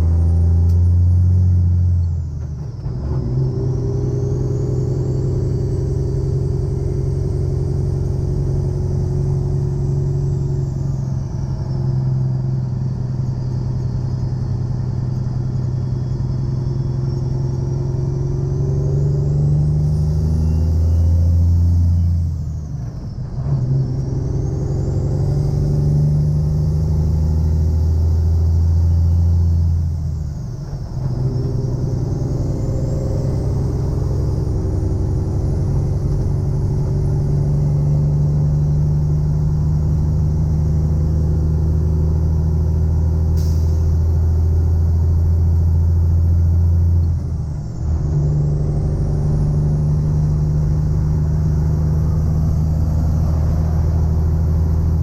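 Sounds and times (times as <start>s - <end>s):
diesel truck engine pulling: 0.0s - 55.0s
faint high whistle: 15.2s - 18.0s, 19.9s - 23.3s.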